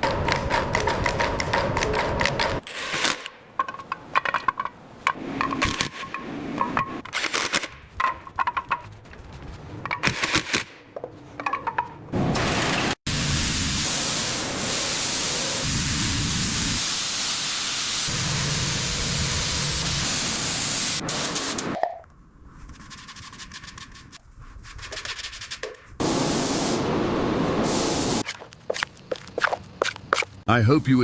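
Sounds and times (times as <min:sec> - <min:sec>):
loud hissing rush: 0:13.1 - 0:21.8, 0:26.0 - 0:28.2.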